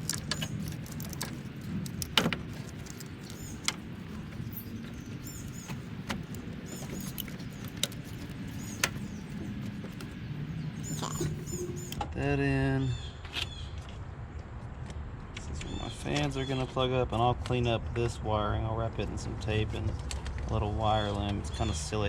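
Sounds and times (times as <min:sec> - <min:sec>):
plastic electrical parts clicking: 0:00.0 - 0:10.2
steady low hum: 0:00.0 - 0:12.3.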